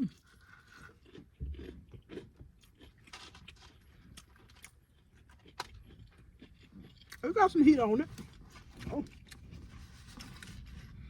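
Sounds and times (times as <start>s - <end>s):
chewing crunchy fried fish: 0.0s - 11.0s.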